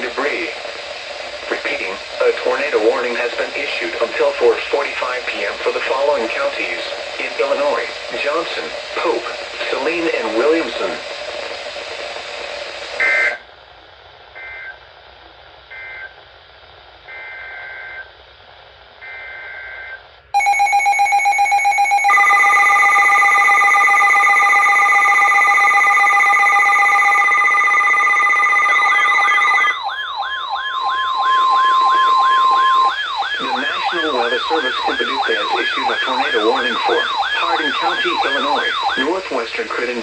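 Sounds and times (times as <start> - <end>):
steady multi-pitch alert tone: 20.4 - 39.0
warbling siren-like tone: 20.4 - 39.0
buzzy two-pitch data bursts: 21.8 - 38.9.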